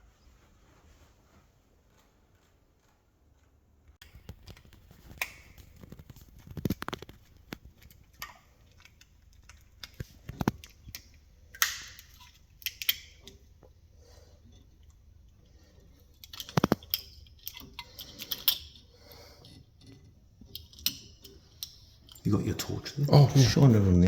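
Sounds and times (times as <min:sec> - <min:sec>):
rustling: 0:00.0 - 0:11.4
wall switch clicking: 0:10.6 - 0:13.2.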